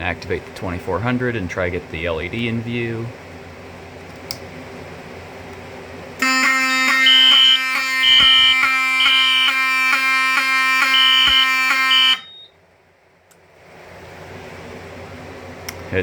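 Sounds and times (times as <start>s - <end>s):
pulsing high beep: 6.2s - 12.5s
fire alarm horn buzzing: 6.2s - 12.6s.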